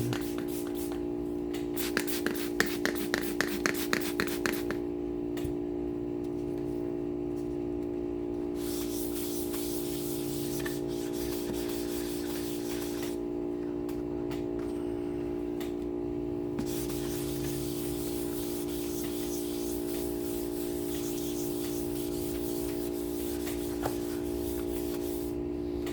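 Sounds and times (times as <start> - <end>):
freezer buzzing hum: 0.0 - 25.9
sanding rubbing hiss: 8.6 - 13.2, 16.6 - 25.3
sandpaper scratching strokes: 8.6 - 13.2, 16.6 - 25.4.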